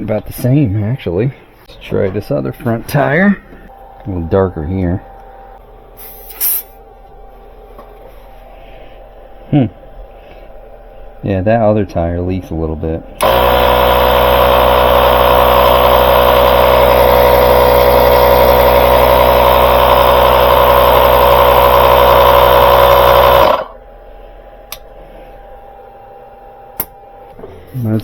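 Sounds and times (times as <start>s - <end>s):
small air compressor running: 13.2s - 25.7s.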